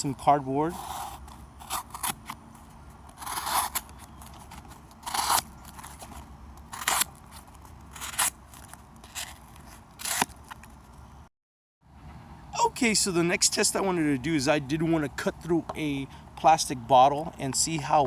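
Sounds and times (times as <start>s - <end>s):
knife slicing cardboard: 3.1s - 5.5s, 6.7s - 7.1s, 7.9s - 8.4s.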